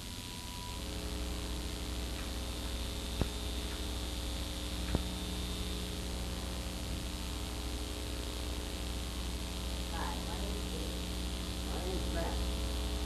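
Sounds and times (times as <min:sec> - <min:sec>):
electrical mains hum: 0:00.0 - 0:13.0
sharp clicks: 0:02.1 - 0:04.0, 0:04.8 - 0:05.2.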